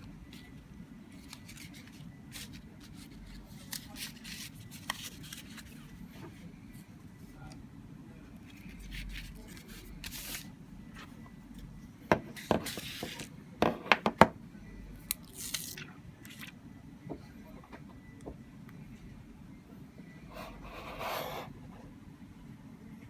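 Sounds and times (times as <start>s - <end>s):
packaging rustling and scraping: 0.4s - 6.4s, 8.5s - 11.2s.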